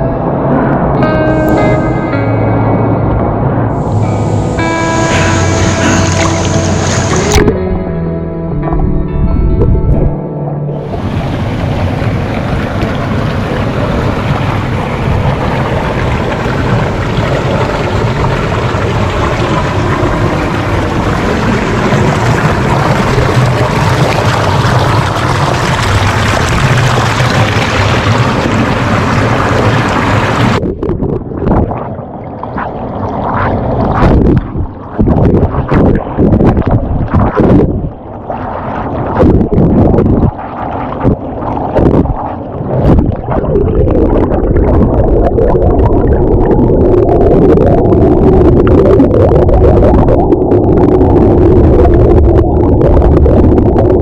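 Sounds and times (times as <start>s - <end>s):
rushing river water: 3.7s - 7.5s, 10.8s - 30.6s
churning bubbling water underwater: 3.7s - 7.7s, 8.6s - 54.0s.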